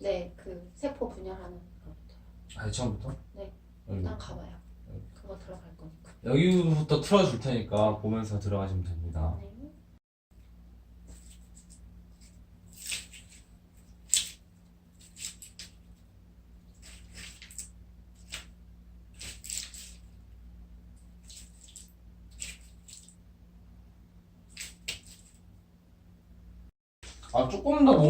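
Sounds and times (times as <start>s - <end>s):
wet slime squelches: 11.0s - 20.3s, 20.9s - 23.2s, 24.4s - 25.5s.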